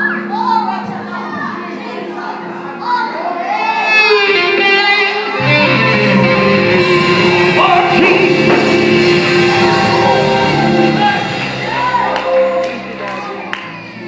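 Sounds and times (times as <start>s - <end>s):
gospel band sustained chords: 1.8s - 14.0s
person singing: 3.9s - 13.4s
bass line: 5.2s - 13.4s.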